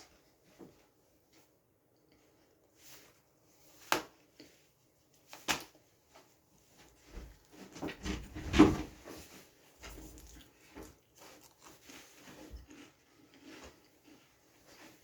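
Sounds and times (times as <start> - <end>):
crackers crunching while chewing: 9.9 - 15.0.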